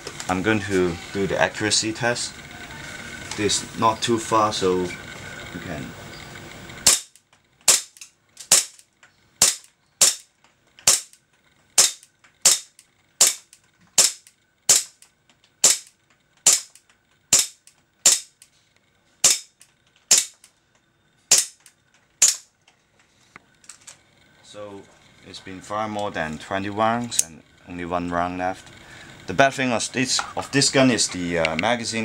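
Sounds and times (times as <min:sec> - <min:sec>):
airsoft pistol shots: 0:06.8 - 0:08.8, 0:09.4 - 0:11.2, 0:11.8 - 0:15.0, 0:15.6 - 0:18.4, 0:19.2 - 0:20.5, 0:21.3 - 0:21.6, 0:22.2 - 0:22.5.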